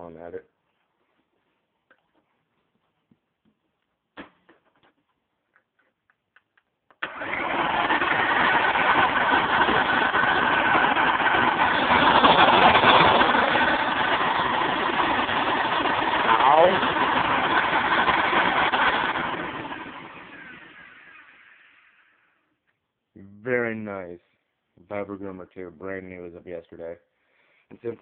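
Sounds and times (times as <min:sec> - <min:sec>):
upright vacuum running: 0:07.0 - 0:22.2.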